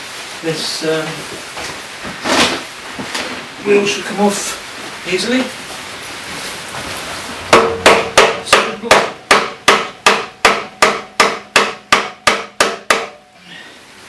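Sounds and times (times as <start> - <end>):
hammer striking metal spindle: 7.5 - 13.2.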